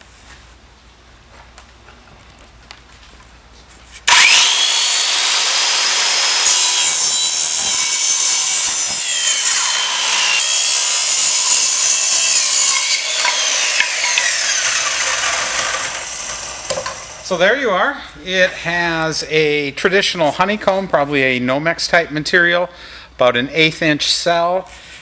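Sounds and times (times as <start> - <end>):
saw cutting with whine: 4.0 - 17.4.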